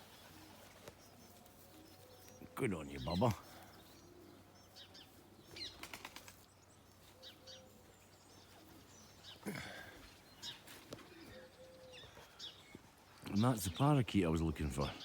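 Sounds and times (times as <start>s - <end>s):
pigeon wings flapping: 5.7s - 6.4s.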